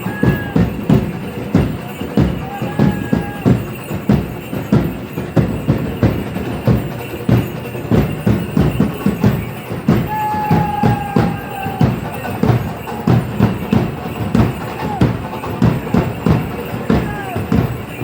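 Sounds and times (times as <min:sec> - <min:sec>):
drums beating dance rhythm: 0:00.0 - 0:18.0.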